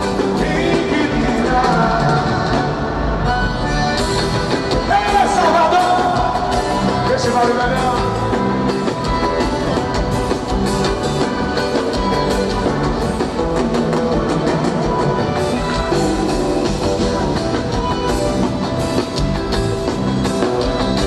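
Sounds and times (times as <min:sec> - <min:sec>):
person singing: 0:00.0 - 0:02.8
live band music: 0:00.0 - 0:21.0
steady drum beat: 0:00.0 - 0:21.0.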